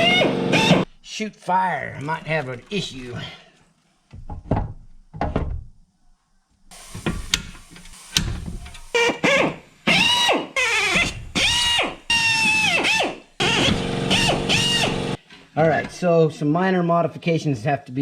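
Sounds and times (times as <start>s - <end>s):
cordless drill bursts: 0.0s - 0.9s, 6.7s - 15.2s
rough grinding noise: 0.0s - 1.0s, 10.7s - 15.2s
knocks: 4.1s - 5.7s.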